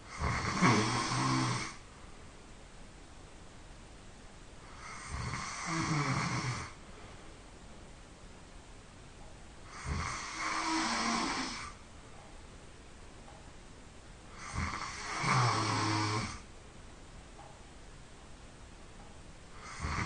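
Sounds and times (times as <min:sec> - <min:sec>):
person snoring loudly: 0:00.0 - 0:01.8, 0:04.7 - 0:06.8, 0:09.7 - 0:11.8, 0:14.3 - 0:16.4, 0:19.6 - 0:20.0.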